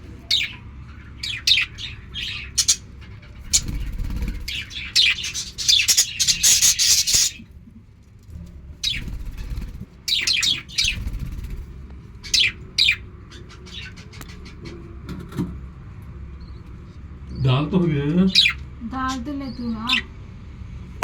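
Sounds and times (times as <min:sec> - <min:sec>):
lovebird screech: 0:03.4 - 0:07.4.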